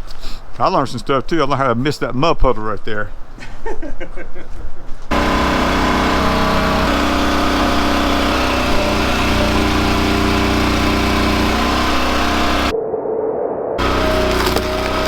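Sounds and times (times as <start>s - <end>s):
small gasoline engine running: 5.1s - 12.7s, 13.8s - 15.0s.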